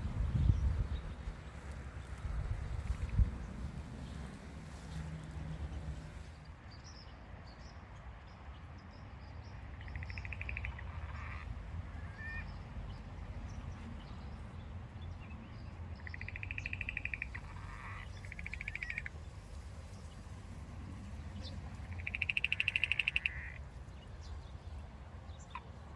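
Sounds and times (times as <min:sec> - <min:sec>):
buzzy rattling animal calls: 0:16.2 - 0:19.1, 0:21.9 - 0:23.6.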